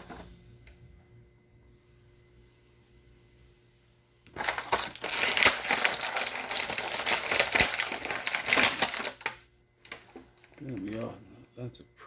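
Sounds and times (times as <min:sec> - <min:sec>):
plastic packaging crinkling: 0:04.3 - 0:11.1.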